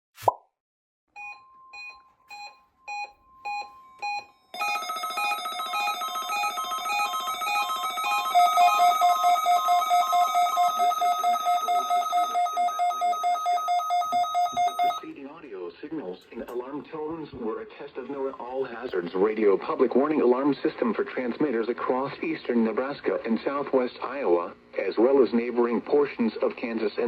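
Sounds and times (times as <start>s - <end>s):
multi-tone electronic alarm: 1.2s - 15.0s.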